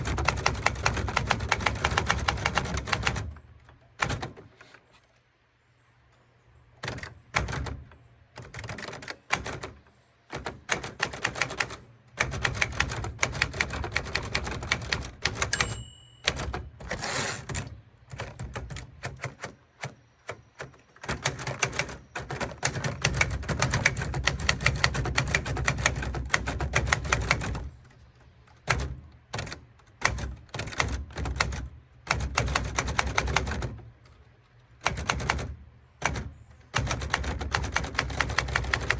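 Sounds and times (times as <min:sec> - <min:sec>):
typewriter keys clattering: 0:00.0 - 0:04.8, 0:06.8 - 0:38.9.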